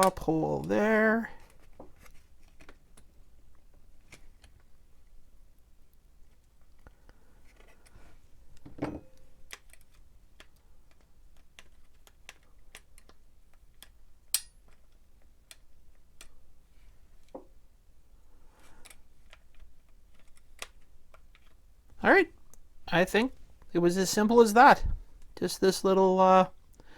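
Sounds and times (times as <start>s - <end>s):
plastic parts clicking: 9.4s - 16.4s, 18.8s - 21.6s.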